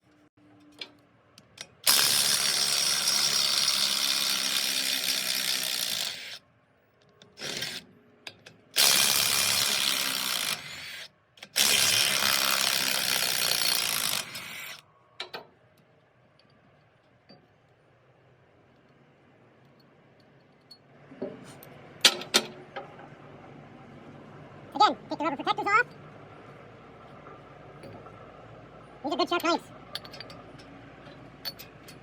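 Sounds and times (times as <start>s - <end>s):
handheld power tool running: 1.8s - 6.4s, 8.8s - 14.8s
metallic clicks and knocks: 15.2s - 17.5s.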